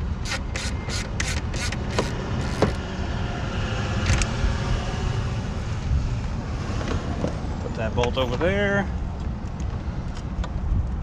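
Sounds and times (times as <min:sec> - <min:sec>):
socket wrench clicks and scrape: 0:00.2 - 0:02.8.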